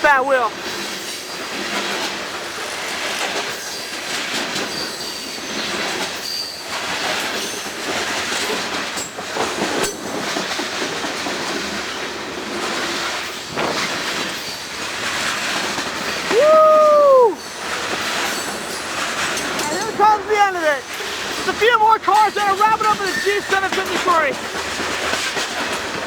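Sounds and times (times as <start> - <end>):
train wheels rumbling on rails: 0.0 - 26.0
sharp clanks: 18.2 - 20.0.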